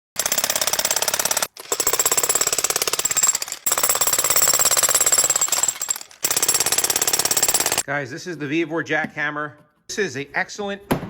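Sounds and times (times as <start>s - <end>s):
jackhammer hammering: 0.2s - 7.8s.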